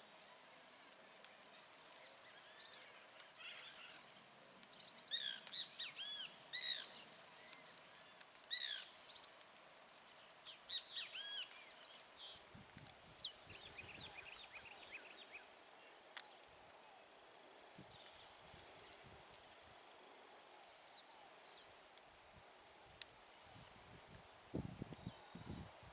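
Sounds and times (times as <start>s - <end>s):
other birdsong: 0.0s - 18.4s
arched bird chirps: 10.1s - 12.0s, 12.8s - 13.4s.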